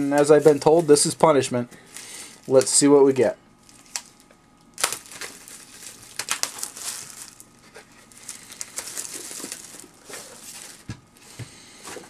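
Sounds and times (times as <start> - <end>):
plastic wrapping crinkling and tearing: 1.9 - 2.8, 3.6 - 11.3.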